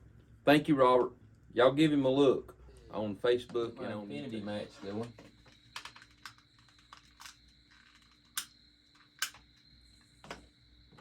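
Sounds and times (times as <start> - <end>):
clicks of small hard objects: 5.0 - 9.6.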